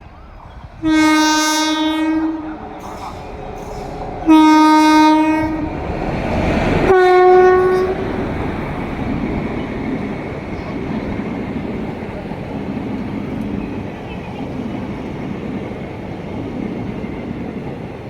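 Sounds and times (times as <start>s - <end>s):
moving train rumble: 0.0s - 18.0s
train horn blasts: 0.8s - 6.1s, 6.8s - 8.2s.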